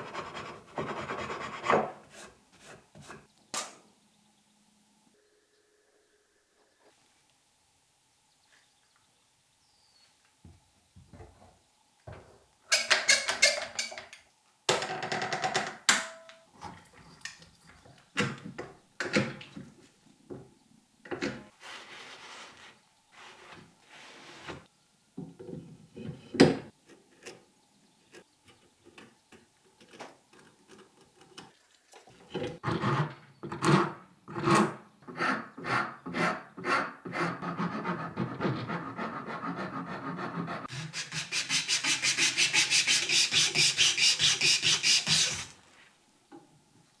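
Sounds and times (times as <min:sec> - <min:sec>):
hand rasp scraping on wood: 0:35.1 - 0:45.6.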